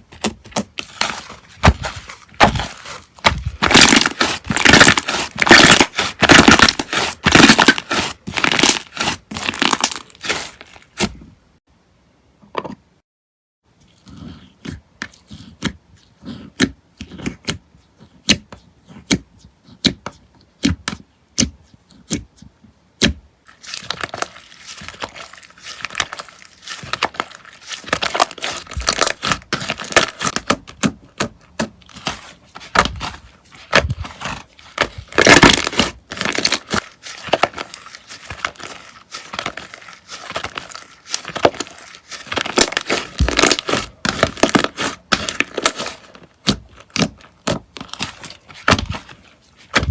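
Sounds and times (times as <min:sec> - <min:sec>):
slime clicking and crackling: 0:00.2 - 0:10.6, 0:23.0 - 0:49.9.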